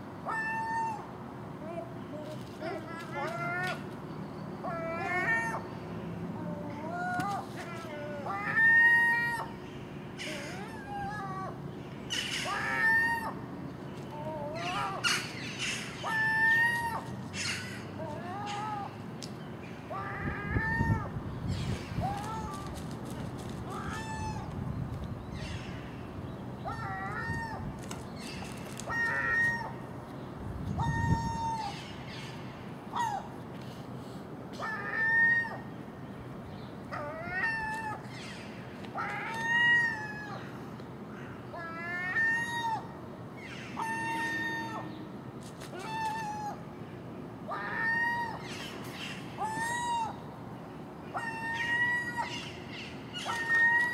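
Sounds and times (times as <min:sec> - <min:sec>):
gulls calling: 0:00.0 - 0:33.4, 0:36.7 - 0:53.9
gull mewing calls: 0:04.6 - 0:05.7, 0:10.2 - 0:13.5, 0:14.1 - 0:19.0, 0:19.8 - 0:21.2, 0:23.6 - 0:24.6, 0:26.6 - 0:29.9, 0:30.7 - 0:31.9, 0:41.2 - 0:45.0, 0:47.5 - 0:48.7, 0:49.3 - 0:50.3, 0:51.1 - 0:53.9.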